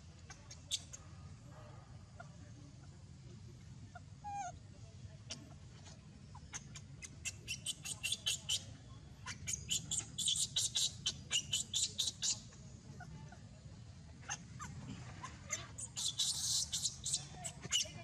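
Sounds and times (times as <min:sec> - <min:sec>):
baby monkey squeaking cries: 0:06.6 - 0:08.6, 0:09.2 - 0:12.4, 0:14.3 - 0:18.0.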